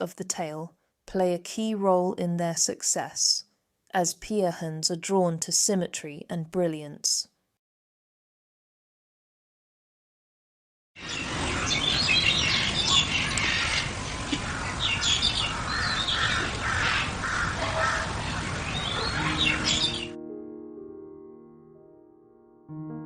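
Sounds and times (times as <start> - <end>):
birds chirping and calling: 11.0 - 20.1.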